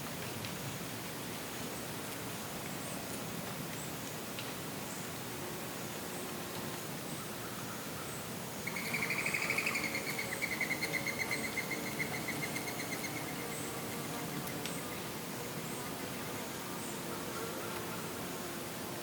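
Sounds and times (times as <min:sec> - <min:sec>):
outdoor hiss: 0:00.0 - 0:19.0
faint high ticks: 0:14.4 - 0:14.8.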